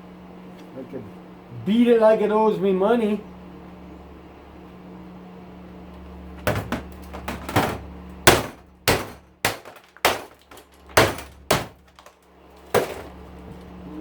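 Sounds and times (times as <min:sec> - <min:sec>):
hammer striking metal housing: 0:06.4 - 0:12.1.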